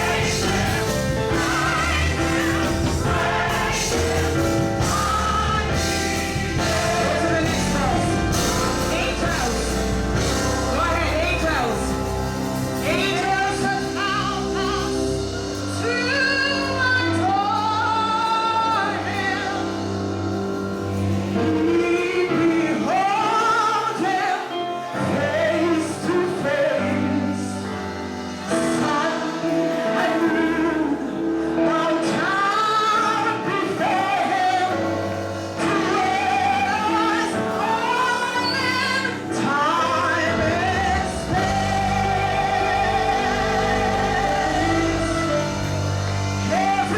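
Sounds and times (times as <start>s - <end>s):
bass line: 0.0s - 16.7s, 40.2s - 46.9s
gospel singing: 0.0s - 46.9s
instrumental accompaniment: 0.0s - 46.9s.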